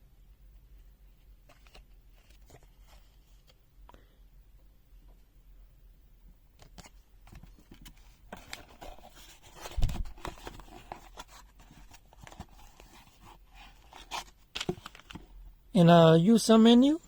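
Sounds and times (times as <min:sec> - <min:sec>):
paper and plastic rustling: 0:01.4 - 0:03.6, 0:06.6 - 0:15.3.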